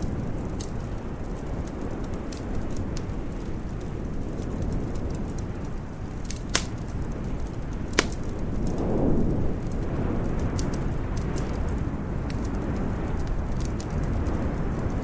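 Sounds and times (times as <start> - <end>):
steady low rumble: 0.0 - 15.0
wood fire crackling: 0.0 - 15.0
sharp loud fire pops: 7.9 - 8.4.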